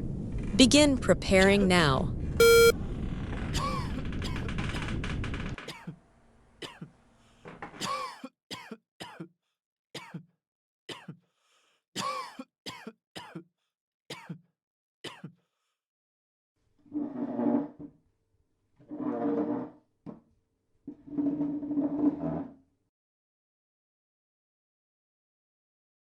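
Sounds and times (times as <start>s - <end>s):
person coughing: 5.7s - 6.0s, 6.6s - 6.9s, 7.8s - 9.3s, 10.0s - 10.3s, 10.9s - 11.3s, 12.0s - 13.5s, 14.1s - 15.5s.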